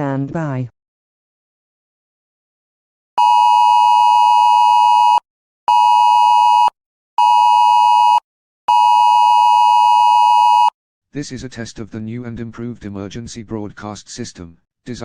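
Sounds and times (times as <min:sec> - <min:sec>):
emergency alert beeps: 0:03.2 - 0:10.7.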